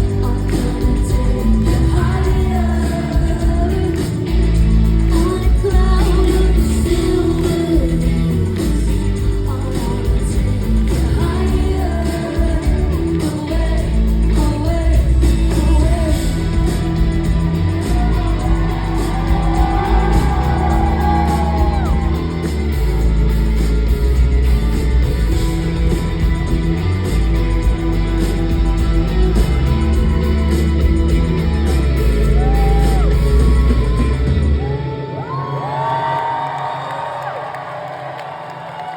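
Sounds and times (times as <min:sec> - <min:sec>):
heavy bass line: 0:00.0 - 0:34.9
live band playing pop-rock: 0:00.0 - 0:35.2
person singing: 0:00.0 - 0:35.7
steady drums: 0:00.0 - 0:35.9
crowd shouting: 0:17.5 - 0:22.6.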